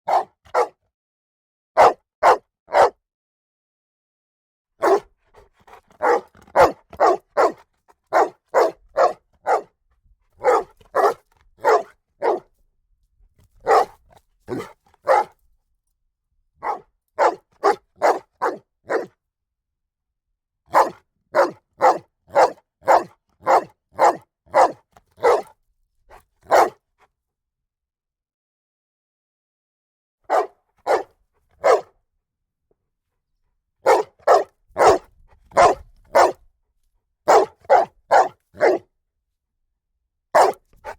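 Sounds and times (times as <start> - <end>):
dog barking: 0.0 - 0.8, 1.8 - 3.0, 4.8 - 9.8, 10.4 - 12.5, 13.6 - 15.4, 16.6 - 19.2, 20.7 - 26.8, 30.3 - 31.9, 33.8 - 36.5, 37.3 - 38.9, 40.4 - 40.9.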